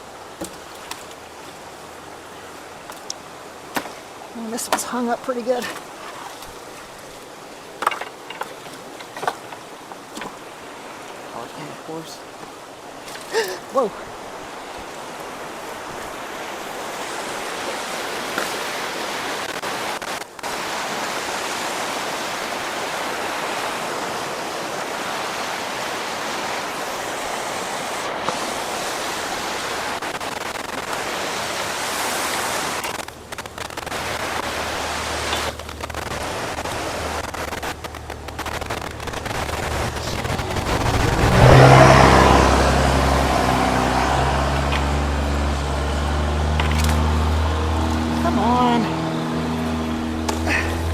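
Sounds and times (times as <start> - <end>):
floodwater rushing through culvert: 0.0 - 50.9
low hum: 33.1 - 50.9.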